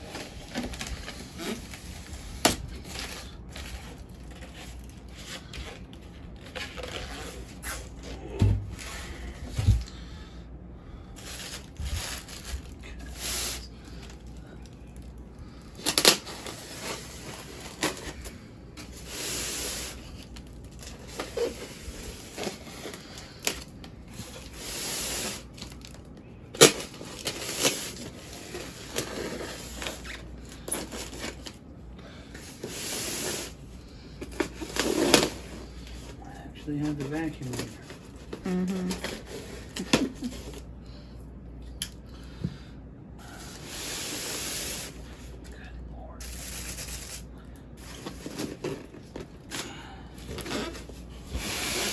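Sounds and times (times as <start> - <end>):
packing material rustling and tearing: 0.0 - 9.8, 11.2 - 40.7, 46.2 - 51.9.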